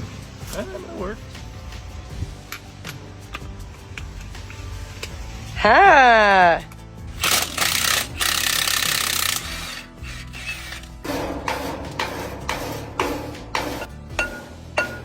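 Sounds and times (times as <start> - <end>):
background music: 0.0 - 15.0
hammer blows on metal: 7.2 - 15.0.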